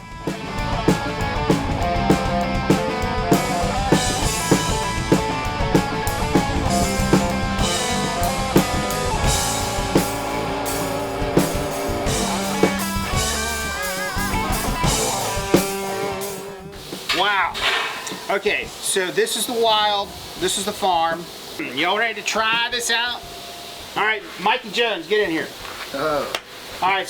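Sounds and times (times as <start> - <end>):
electric guitar lead: 0.0 - 17.0
drum kit beat: 0.0 - 27.0.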